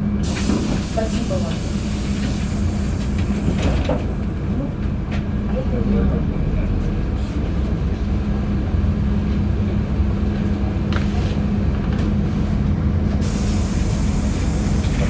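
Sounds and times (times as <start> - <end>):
bus engine drone: 0.0 - 15.0
road rumble: 0.0 - 15.0
air hiss: 13.2 - 15.0.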